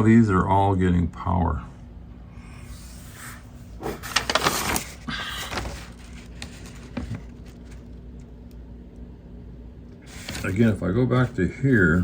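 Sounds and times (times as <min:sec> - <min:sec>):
faint steady hum: 0:00.0 - 0:12.0
wiring harness rustling and clicking: 0:04.1 - 0:08.3.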